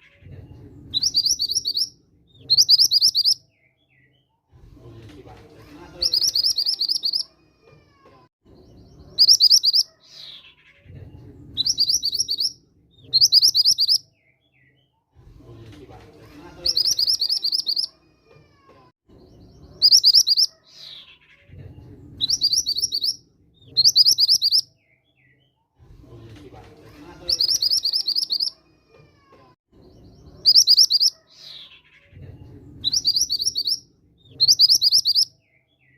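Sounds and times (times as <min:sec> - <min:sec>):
fast high-pitched bird trills: 0:00.9 - 0:03.4, 0:06.0 - 0:07.3, 0:09.1 - 0:10.8, 0:11.6 - 0:14.0, 0:16.6 - 0:17.9, 0:19.7 - 0:21.4, 0:22.2 - 0:24.7, 0:27.2 - 0:28.6, 0:30.3 - 0:32.0, 0:32.8 - 0:35.3.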